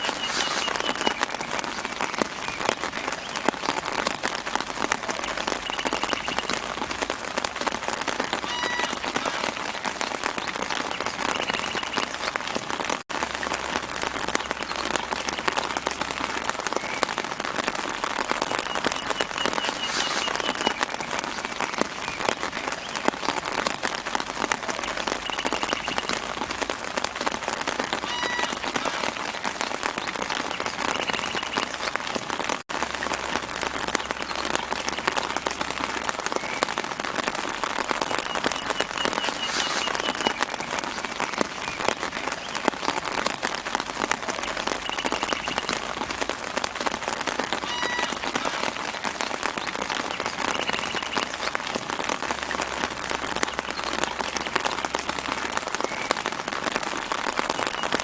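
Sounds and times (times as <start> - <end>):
bird chirps: 0.0 - 1.3, 24.9 - 26.2, 44.8 - 45.7
light rain pattering on leaves: 0.0 - 58.0.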